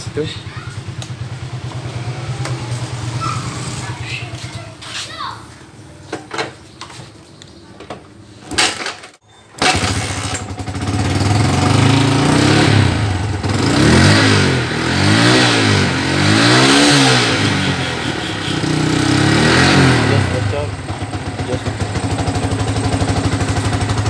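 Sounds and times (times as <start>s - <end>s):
motorcycle engine revving: 0.0s - 4.5s, 9.6s - 24.0s
motorcycle engine starting: 0.0s - 4.6s, 8.5s - 24.0s.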